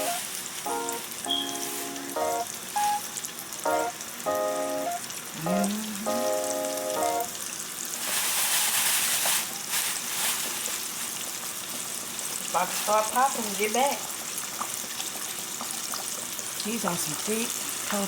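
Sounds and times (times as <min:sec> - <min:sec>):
background music of held notes: 0:00.0 - 0:03.0, 0:03.7 - 0:07.3
oil sizzling in a frying pan: 0:00.0 - 0:05.4, 0:06.2 - 0:18.0.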